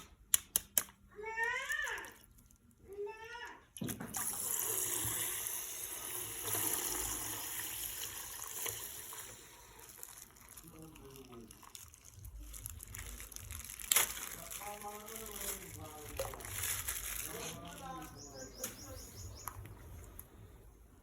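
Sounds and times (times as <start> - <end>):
water pouring and trickling: 3.8 - 18.2.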